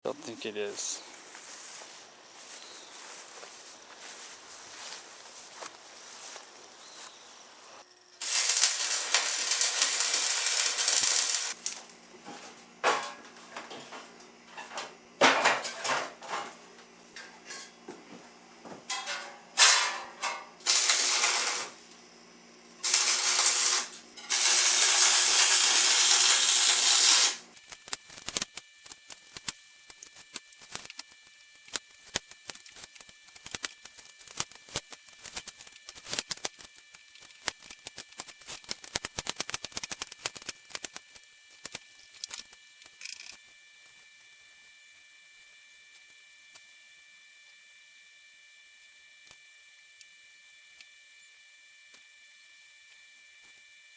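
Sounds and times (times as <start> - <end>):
duct tape ripping off roll: 8.2 - 11.8, 20.7 - 21.8, 22.8 - 43.4.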